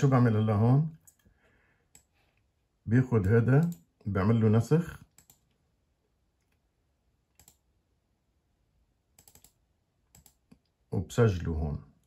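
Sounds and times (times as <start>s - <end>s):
computer mouse clicks: 1.0s - 1.3s, 1.9s - 2.5s, 3.2s - 4.1s, 5.0s - 5.6s, 7.3s - 7.7s, 9.1s - 10.8s.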